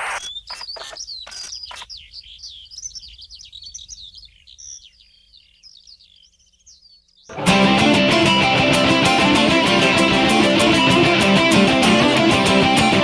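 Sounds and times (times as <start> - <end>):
sharp clicks: 0.0 - 1.9
birds chirping: 0.0 - 13.0.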